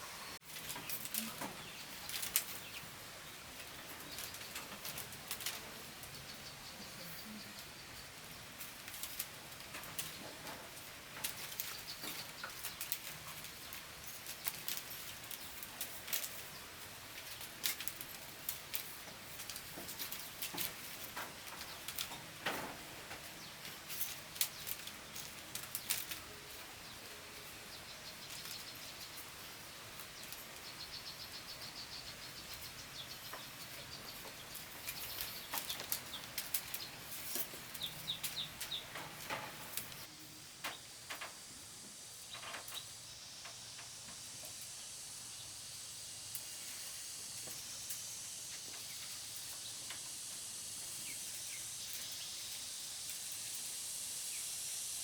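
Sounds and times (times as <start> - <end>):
birds chirping: 0.0 - 53.0
high insect drone: 23.4 - 55.0.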